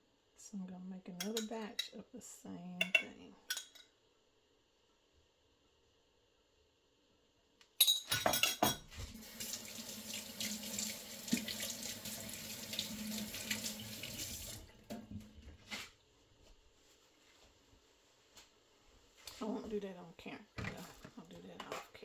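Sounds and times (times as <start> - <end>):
kitchen tap running into sink: 8.9 - 15.3.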